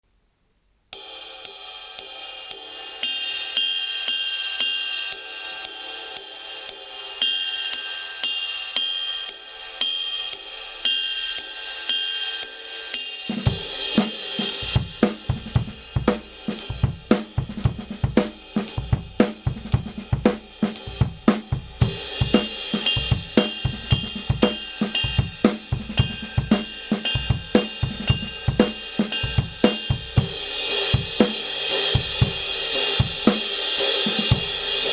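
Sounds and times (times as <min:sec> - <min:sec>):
ride cymbal: 0:01.0 - 0:34.9
snare drum: 0:13.3 - 0:34.9
bass drum: 0:13.5 - 0:34.6.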